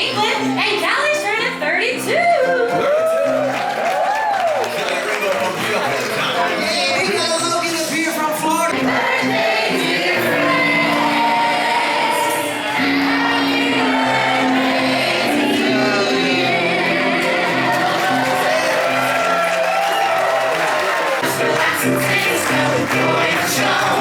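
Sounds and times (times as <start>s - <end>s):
voices singing: 8.5s - 24.0s.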